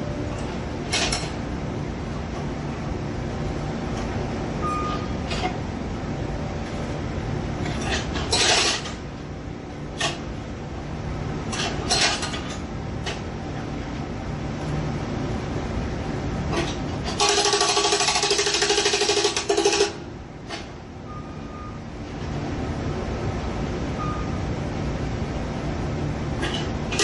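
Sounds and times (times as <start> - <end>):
jackhammer pounding on pavement: 17.2 - 20.0.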